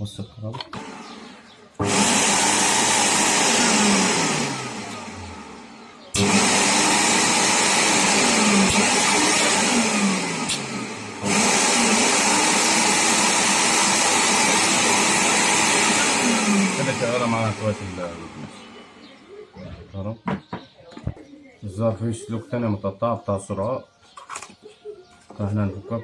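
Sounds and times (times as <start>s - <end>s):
vacuum cleaner motor whining: 0.6s - 19.5s.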